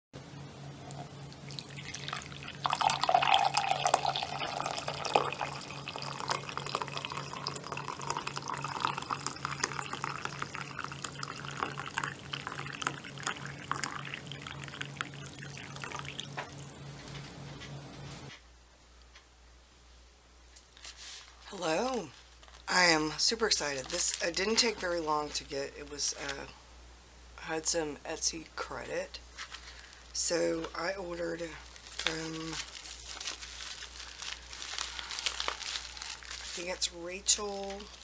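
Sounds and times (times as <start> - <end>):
steady low hum: 0.2 - 18.4
water dripping: 0.7 - 16.9
water running and splashing: 0.7 - 17.0.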